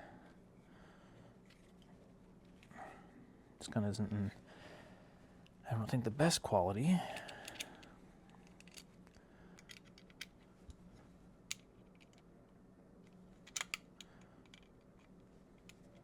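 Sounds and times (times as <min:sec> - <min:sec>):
low steady hum: 0:00.0 - 0:16.0
small clicks of metal parts: 0:07.1 - 0:10.8, 0:11.5 - 0:12.3, 0:13.0 - 0:16.0.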